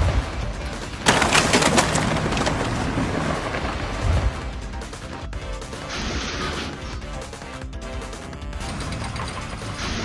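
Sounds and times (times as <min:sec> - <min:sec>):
burst of noise: 0:00.0 - 0:07.2
background music: 0:00.0 - 0:10.0.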